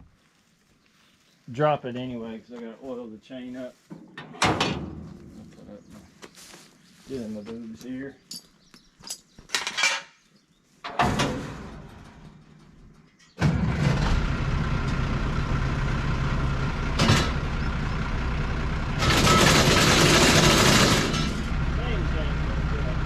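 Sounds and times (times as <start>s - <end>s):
tractor engine running: 11.0s - 23.0s.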